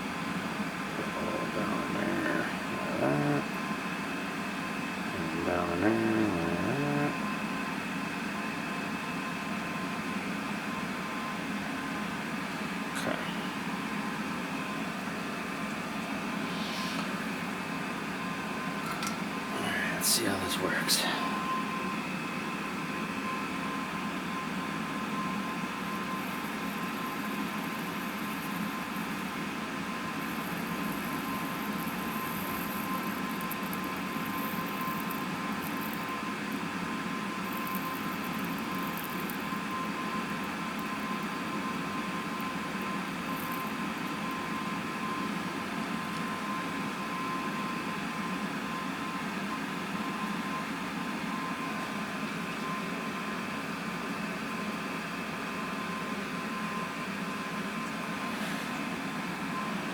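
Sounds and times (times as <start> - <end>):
machine hum and hiss: 0.0 - 59.9
thin constant whine: 0.0 - 59.9
faint high hissing: 16.4 - 17.2.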